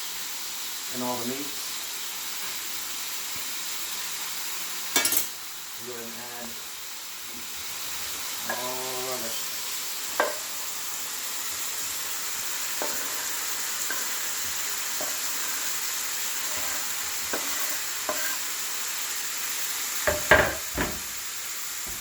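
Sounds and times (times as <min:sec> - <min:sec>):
food sizzling in a pan: 0:00.0 - 0:22.0
utensil scraping a pan: 0:10.2 - 0:10.6, 0:12.3 - 0:18.6.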